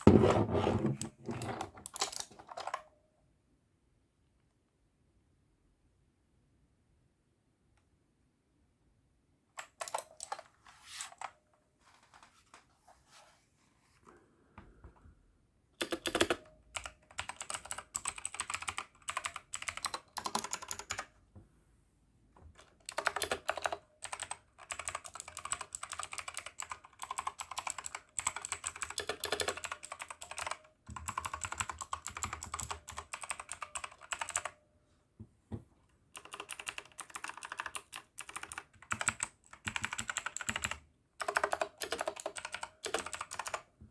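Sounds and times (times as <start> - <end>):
clicky keyboard typing: 1.0 - 2.9, 9.6 - 10.5, 15.8 - 21.1, 22.6 - 34.6, 36.2 - 43.7.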